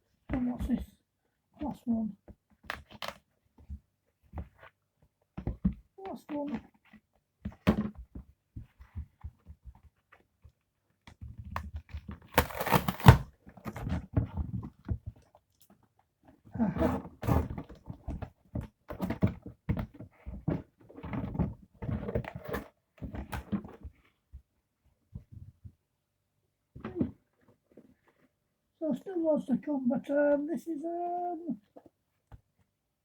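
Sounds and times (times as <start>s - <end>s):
packaging rustles and crinkles: 12.2s - 14.6s
packaging tearing and rustling: 12.3s - 13.2s.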